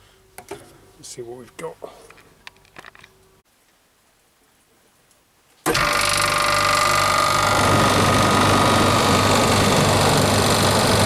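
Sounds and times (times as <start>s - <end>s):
refrigeration compressor humming: 5.7s - 11.0s
fan rush: 7.1s - 11.0s.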